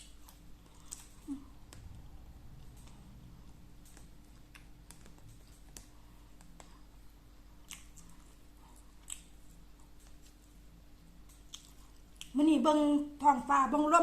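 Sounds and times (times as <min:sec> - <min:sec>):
steady low hum: 0:00.0 - 0:14.0
mouth clicks from chewing: 0:07.6 - 0:08.3, 0:09.0 - 0:10.4, 0:11.2 - 0:12.4.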